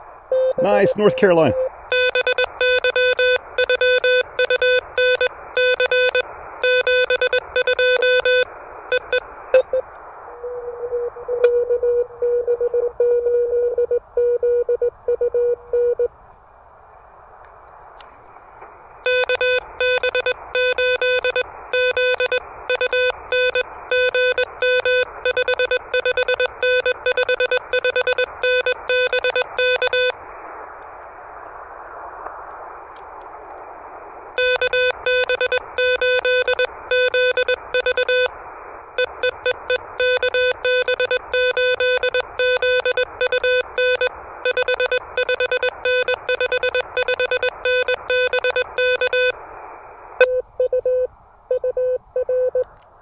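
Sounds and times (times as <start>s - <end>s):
radio band noise hiss: 0.0s - 11.2s, 16.8s - 50.2s
morse code tone beeping: 0.3s - 9.8s, 19.1s - 30.2s, 34.4s - 38.3s, 39.0s - 49.4s, 50.2s - 52.6s.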